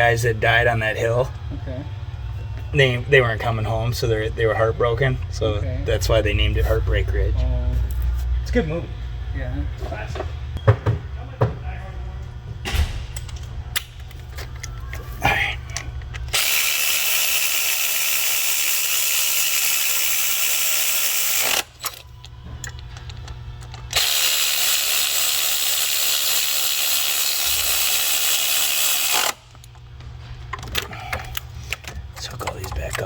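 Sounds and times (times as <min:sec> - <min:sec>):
power ratchet running: 0:15.4 - 0:29.8.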